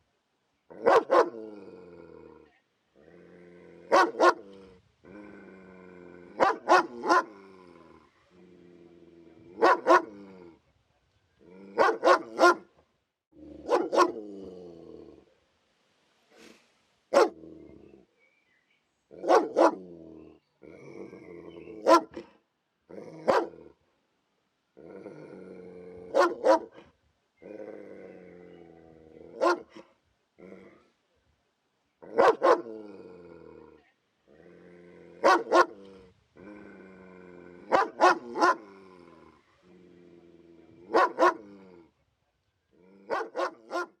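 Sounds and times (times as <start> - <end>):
dog barking: 0.8 - 1.4, 3.9 - 4.4, 6.4 - 7.3, 9.6 - 10.1, 11.8 - 12.7, 13.6 - 14.2, 17.1 - 17.4, 19.2 - 19.8, 21.8 - 22.3, 23.2 - 23.6, 26.1 - 26.8, 29.4 - 29.8, 32.1 - 32.7, 35.2 - 35.8, 37.7 - 38.6, 40.9 - 41.5, 43.1 - 44.0
dog growling: 1.1 - 10.6, 13.4 - 15.3, 19.2 - 22.0, 24.8 - 26.7, 27.4 - 29.6, 30.4 - 30.9, 32.0 - 42.0.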